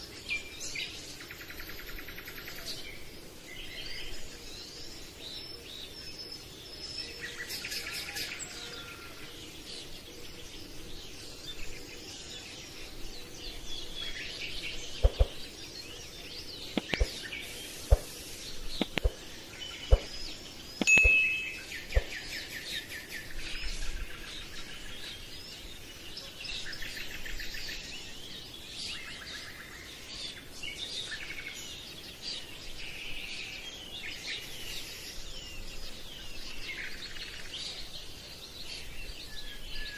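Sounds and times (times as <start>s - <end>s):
steady background hiss: 0.0s - 39.9s
birds chirping: 0.6s - 39.9s
sharp taps: 16.8s - 17.2s, 18.8s - 19.2s.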